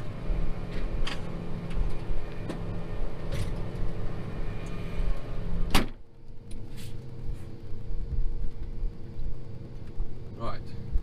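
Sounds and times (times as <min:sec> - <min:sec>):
combine engine running: 0:00.0 - 0:05.8
cab door shutting: 0:05.6 - 0:06.0.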